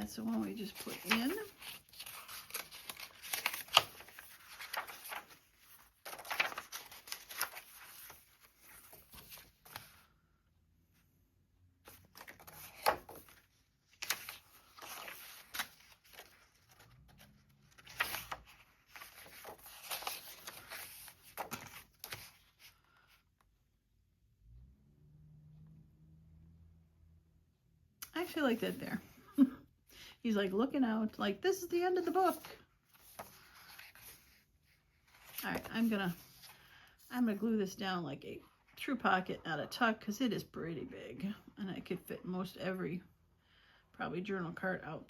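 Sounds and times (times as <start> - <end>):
paper rustling and crinkling: 0.0 - 10.1, 11.9 - 23.2, 32.0 - 36.7.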